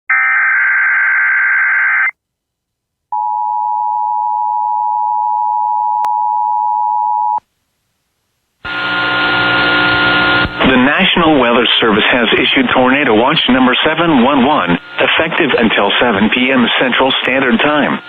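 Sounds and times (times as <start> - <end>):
loud noisy sound: 8.7 - 18.0.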